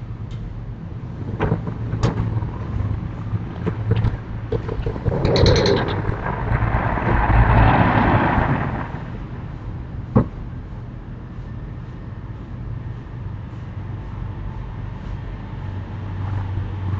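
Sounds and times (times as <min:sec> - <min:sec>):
steady low hum: 0:00.0 - 0:16.9
vehicle passing: 0:01.1 - 0:10.1.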